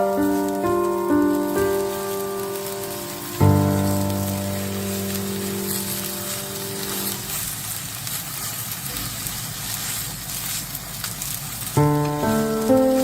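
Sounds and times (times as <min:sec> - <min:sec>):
background music chord: 0:00.0 - 0:07.2
rain hissing: 0:00.0 - 0:13.0.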